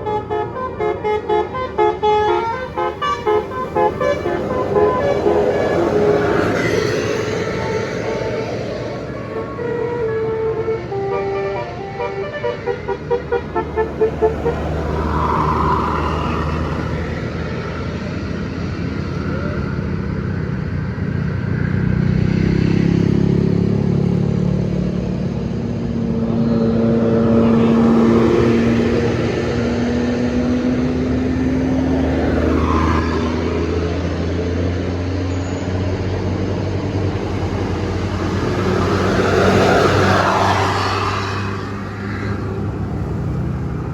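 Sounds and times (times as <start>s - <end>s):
bus horn musical toots: 0.0s - 15.5s, 26.5s - 32.9s
heavy vehicles passing: 0.0s - 43.9s.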